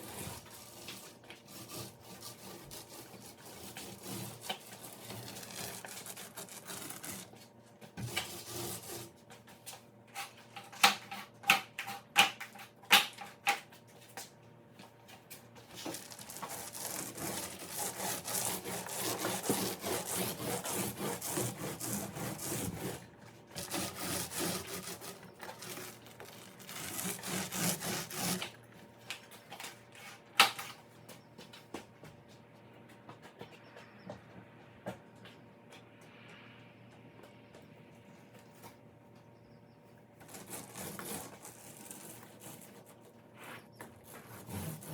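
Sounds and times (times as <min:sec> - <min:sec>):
scraping and rubbing: 0:00.0 - 0:09.2, 0:15.7 - 0:28.6, 0:40.2 - 0:44.9.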